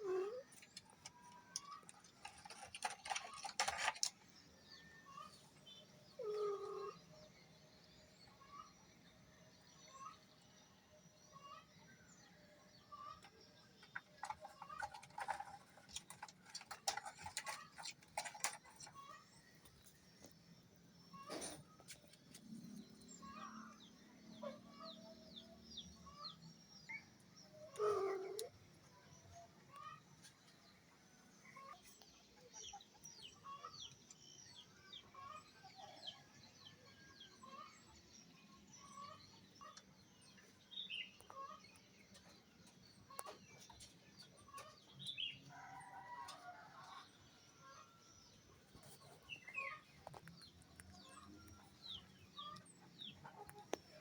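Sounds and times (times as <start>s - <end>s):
faint bird chirps: 4.8s - 7.4s, 25.5s - 30.0s.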